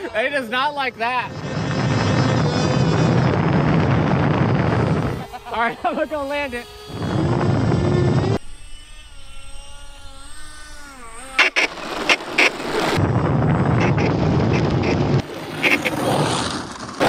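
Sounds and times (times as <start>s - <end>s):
model airplane motors whining: 0.0s - 13.0s
plane scraping along ground: 0.0s - 17.0s.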